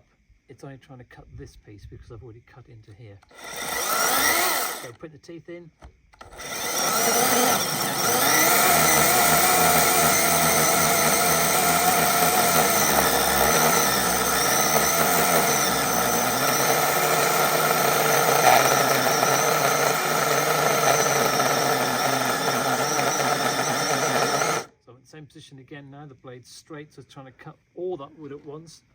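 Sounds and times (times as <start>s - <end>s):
electric chainsaw cutting stump: 3.3s - 5.0s, 6.2s - 24.7s.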